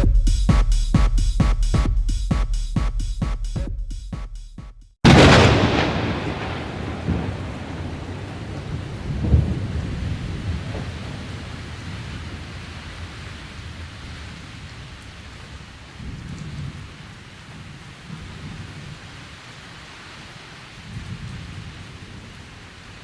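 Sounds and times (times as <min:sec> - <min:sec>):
low rolling thunder: 0:05.0 - 0:14.6
steady rain falling: 0:05.0 - 0:23.0.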